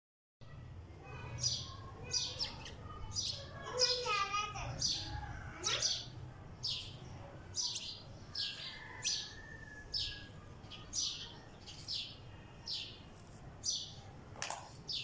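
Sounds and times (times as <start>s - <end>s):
sparrow chirping: 1.1s - 14.1s, 14.7s - 15.0s.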